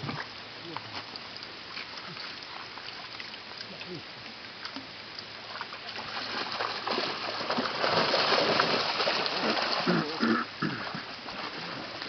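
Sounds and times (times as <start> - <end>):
water splashing and churning: 0.0 - 12.0.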